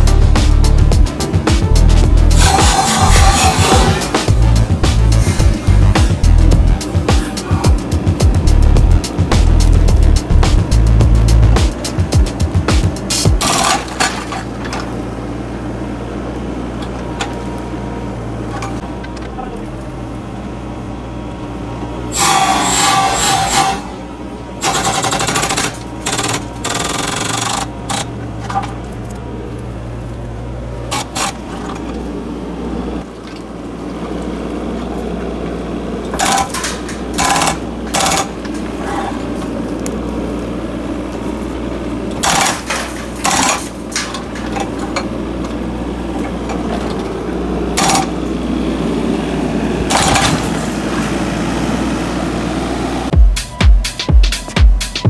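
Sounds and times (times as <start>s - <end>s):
hydraulic breaker hammering concrete: 0.0s - 18.9s, 21.8s - 28.8s, 30.8s - 32.0s, 36.1s - 53.6s
excavator diesel engine running: 0.0s - 53.6s.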